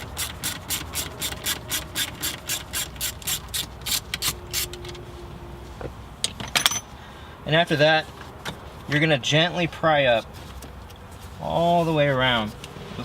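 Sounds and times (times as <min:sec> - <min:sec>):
ratchet driver rasping: 0:00.0 - 0:05.0.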